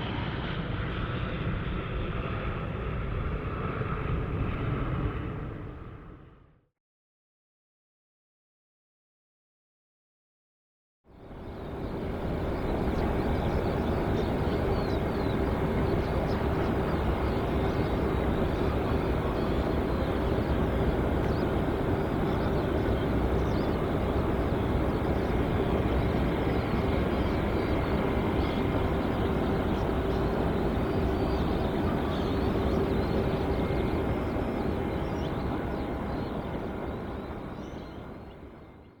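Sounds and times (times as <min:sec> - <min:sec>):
jet engines running: 0:11.2 - 0:39.0.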